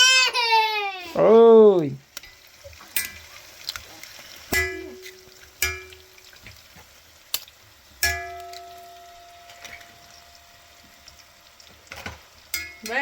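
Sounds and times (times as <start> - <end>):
faint steady hiss: 0.0 - 13.0
metal utensil striking metal pot: 2.9 - 3.3, 4.5 - 6.3, 8.0 - 11.2, 11.9 - 13.0.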